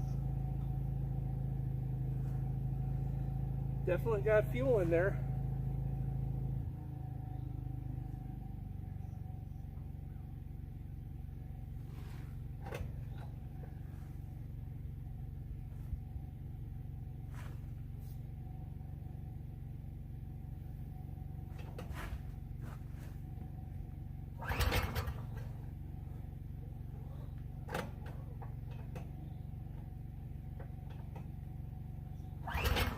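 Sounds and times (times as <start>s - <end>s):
small engine running: 0.0s - 32.9s.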